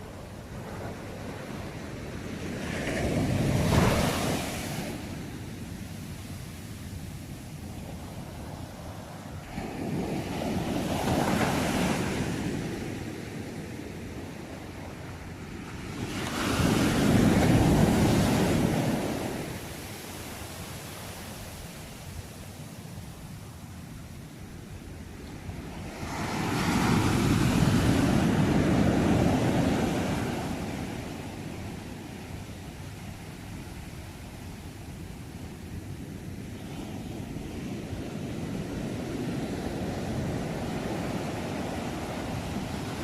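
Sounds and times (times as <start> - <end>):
ocean waves breaking: 0.0 - 7.0, 14.0 - 22.6, 25.0 - 34.0.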